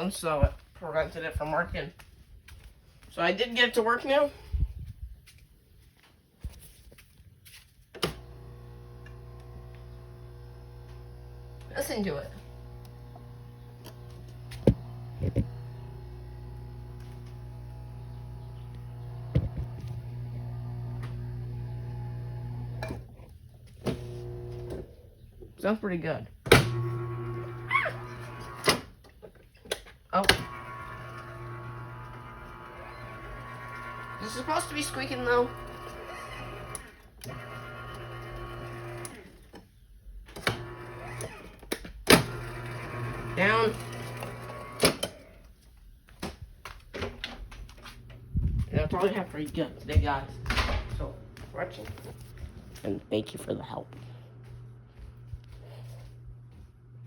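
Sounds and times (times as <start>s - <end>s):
garage door motor humming: 8.0s - 25.2s, 26.4s - 29.0s, 30.2s - 39.6s, 40.2s - 45.4s, 47.0s - 51.4s.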